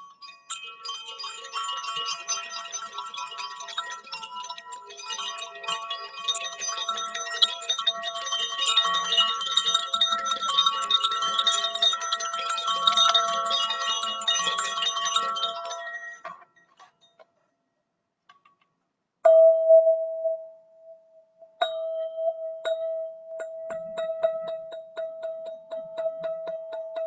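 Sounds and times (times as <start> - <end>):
shimmer of ringing tones: 0.0 - 17.2
struck instrument ringing tone: 0.0 - 17.2.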